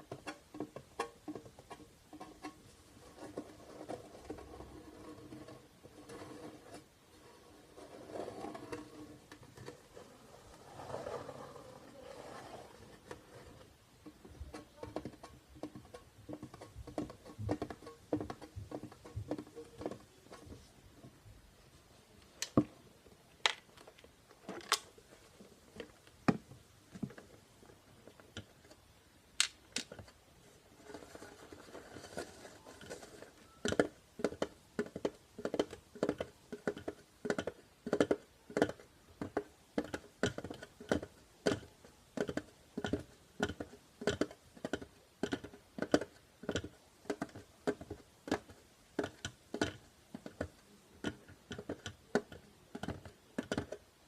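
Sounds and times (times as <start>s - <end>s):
scratchy rustle: 2.3s - 13.7s, 30.4s - 33.4s
plastic containers clicking: 23.4s - 25.0s, 31.6s - 54.0s.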